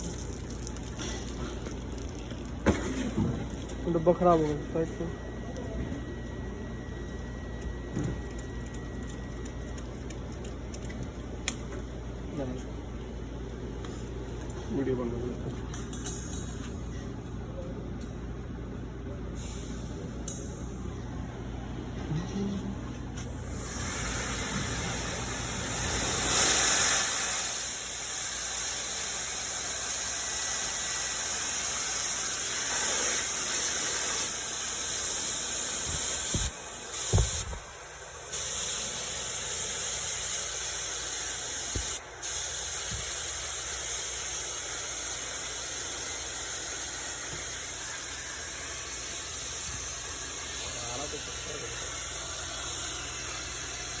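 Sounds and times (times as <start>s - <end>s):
hiss of solvent spraying: 23.2s - 54.0s.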